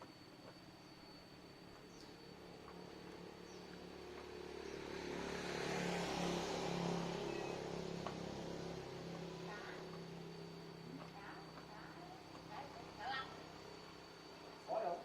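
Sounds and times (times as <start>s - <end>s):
low motor hum: 0.0s - 15.0s
vehicle passing: 2.9s - 14.0s.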